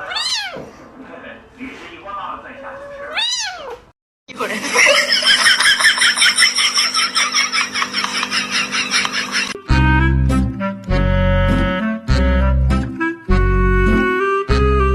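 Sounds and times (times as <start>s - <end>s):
person laughing hard: 4.4s - 9.6s
loud music: 9.6s - 14.9s.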